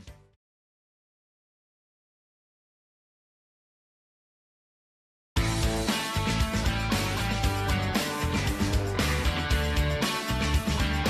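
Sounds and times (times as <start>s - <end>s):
rock music with guitar: 5.4s - 11.0s.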